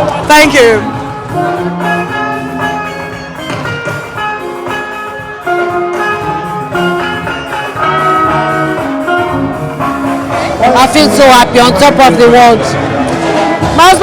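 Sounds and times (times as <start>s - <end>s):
brass horn notes: 0.8s - 10.9s.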